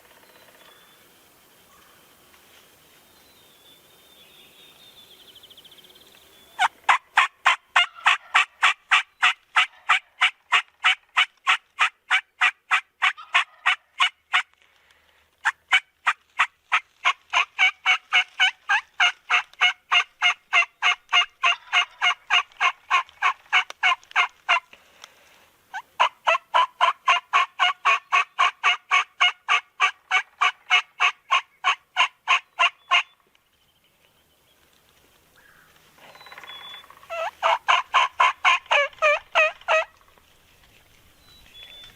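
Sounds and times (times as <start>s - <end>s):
turkey yelping: 6.6s - 14.4s, 15.4s - 24.6s, 25.7s - 33.2s, 36.3s - 40.0s.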